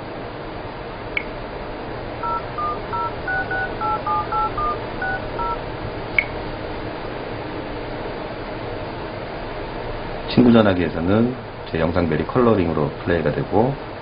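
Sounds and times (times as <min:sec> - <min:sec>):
phone keypad touch tones: 0:02.2 - 0:05.6.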